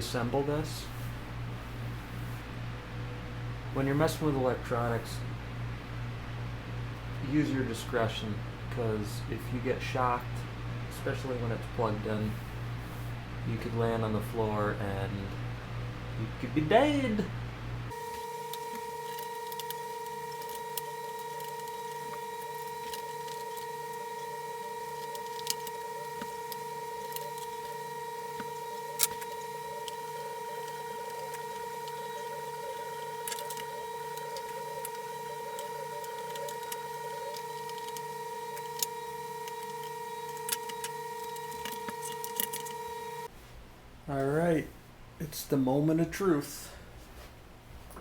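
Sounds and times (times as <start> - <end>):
electrical hum: 0.0 - 48.0
fan parts clicking and tapping: 17.2 - 43.3.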